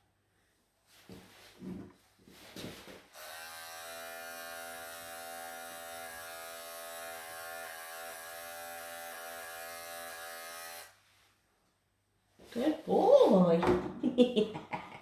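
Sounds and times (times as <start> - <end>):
electric clippers buzzing: 3.1 - 10.9.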